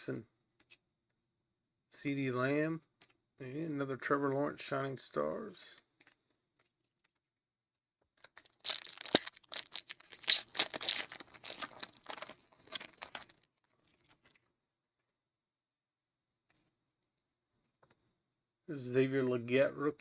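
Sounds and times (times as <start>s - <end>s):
wrapper tearing and crinkling: 8.2s - 14.2s.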